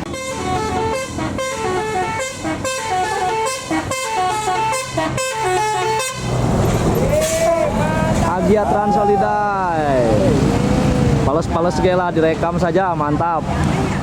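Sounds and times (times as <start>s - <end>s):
musical air horn playing a tune: 0.0s - 6.4s.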